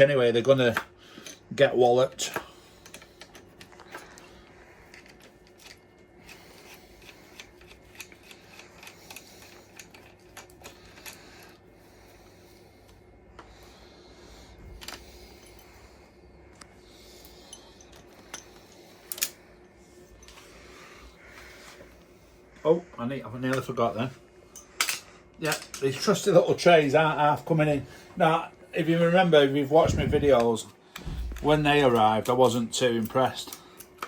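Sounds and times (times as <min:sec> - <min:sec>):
hand tools clicking and tapping: 0:04.9 - 0:11.5.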